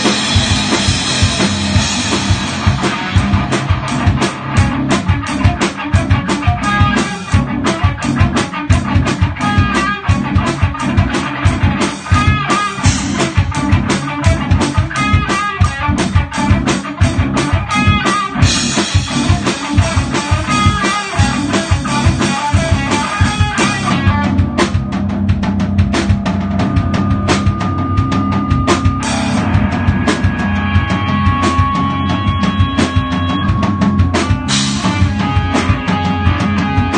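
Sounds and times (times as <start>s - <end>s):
electric guitars: 0.0s - 36.9s
metal band playing: 0.0s - 36.9s
rapid drum hits: 0.0s - 36.9s
cymbals washing: 17.4s - 36.9s.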